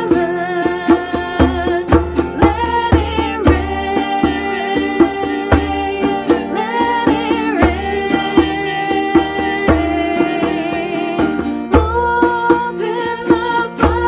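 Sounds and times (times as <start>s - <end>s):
instruments with drum beat: 0.0s - 14.0s
person singing long notes: 0.0s - 14.0s.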